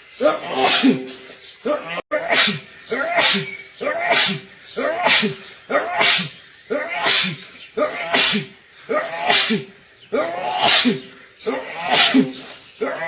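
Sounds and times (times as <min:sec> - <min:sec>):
man sneezing: 0:00.5 - 0:01.0, 0:02.3 - 0:04.4, 0:05.0 - 0:07.4, 0:09.2 - 0:09.7, 0:11.9 - 0:12.4.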